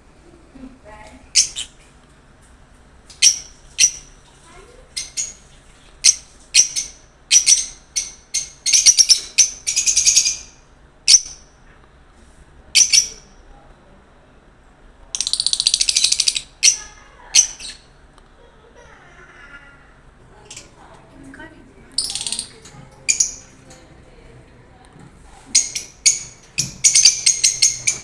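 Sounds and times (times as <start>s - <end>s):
lovebirds chirping and trilling: 1.3s - 1.8s, 3.1s - 11.6s, 12.8s - 13.4s, 15.2s - 18.0s, 21.8s - 23.8s, 25.4s - 28.0s.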